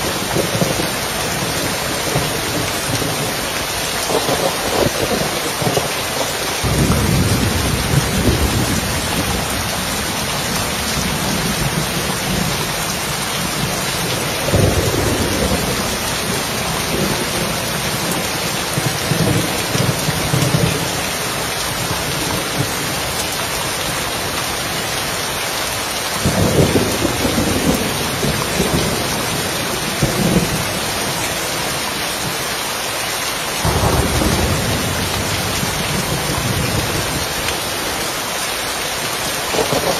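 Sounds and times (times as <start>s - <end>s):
rain falling on a roof: 0.0s - 39.9s
thunder rumbling: 4.0s - 23.2s, 26.2s - 31.6s, 33.6s - 37.9s, 39.5s - 39.9s.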